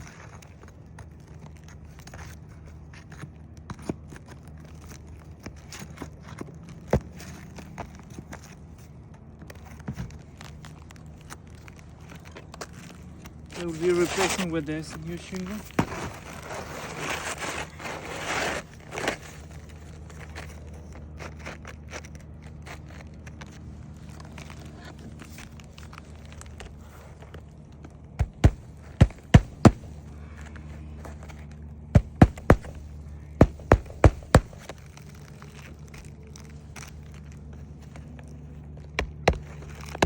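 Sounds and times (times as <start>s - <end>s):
roofing shingle scraping: 9.6s - 40.0s
hammer striking nails: 28.2s - 29.9s, 32.0s - 34.8s.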